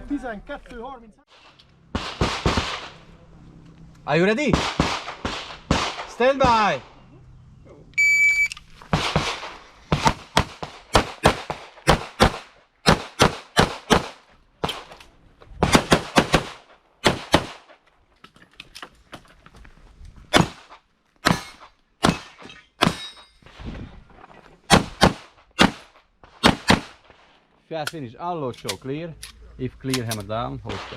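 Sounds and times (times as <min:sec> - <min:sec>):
steel targets clanging: 0:21.4 - 0:23.5.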